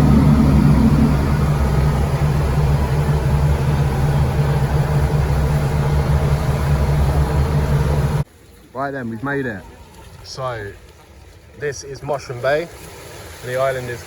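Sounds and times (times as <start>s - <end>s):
boat engines humming: 0.0s - 8.6s.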